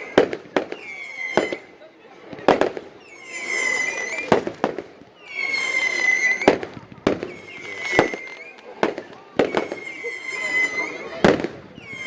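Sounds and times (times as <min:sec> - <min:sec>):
whistling fireworks: 0:00.0 - 0:12.0
fireworks shells bursting: 0:02.3 - 0:12.0.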